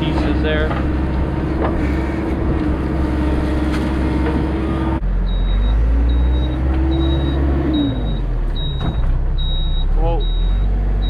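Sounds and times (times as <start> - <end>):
diesel engine under load: 0.0 - 11.0
high warning beeps: 5.3 - 10.6.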